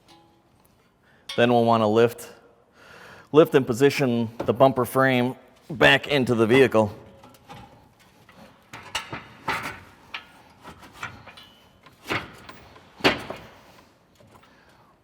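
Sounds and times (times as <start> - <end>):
metal knocks and clunks: 8.7 - 13.7.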